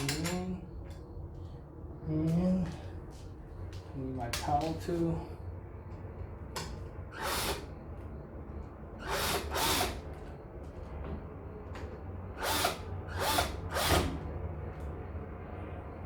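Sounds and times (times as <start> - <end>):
power drill driving screw: 7.2 - 7.7, 9.0 - 10.0, 12.4 - 14.2.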